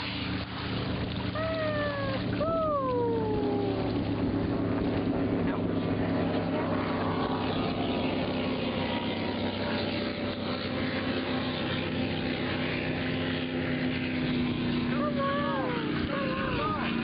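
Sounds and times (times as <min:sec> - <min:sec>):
boat engine running: 0:00.0 - 0:17.0
water rushing: 0:00.0 - 0:17.0
wind: 0:00.0 - 0:17.0.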